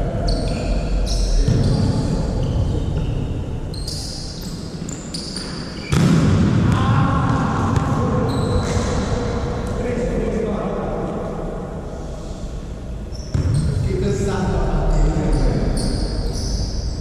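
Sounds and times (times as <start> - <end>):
sneakers squeaking on court: 0.2 - 6.1, 8.3 - 8.9, 13.1 - 13.8
volleyball impacts: 5.4 - 8.0.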